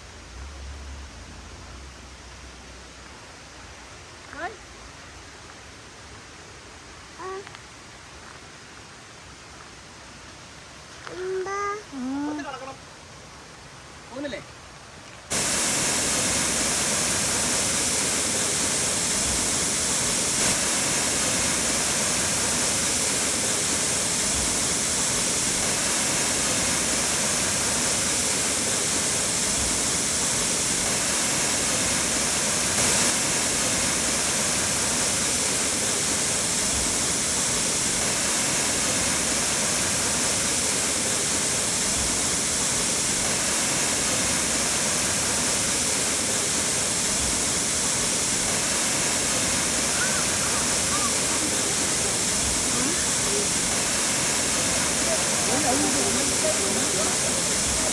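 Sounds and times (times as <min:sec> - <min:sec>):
waterfall rushing: 0:15.3 - 0:57.9.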